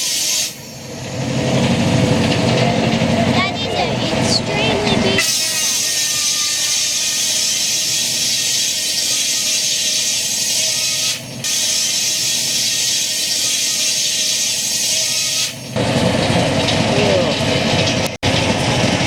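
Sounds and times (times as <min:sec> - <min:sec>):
steam hissing: 0:00.0 - 0:00.9, 0:05.2 - 0:15.8.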